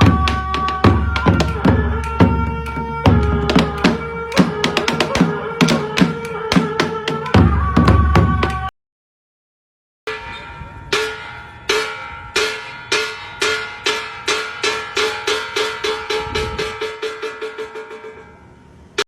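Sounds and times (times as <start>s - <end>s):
ringing percussion strokes: 0.0s - 8.7s, 10.1s - 19.0s.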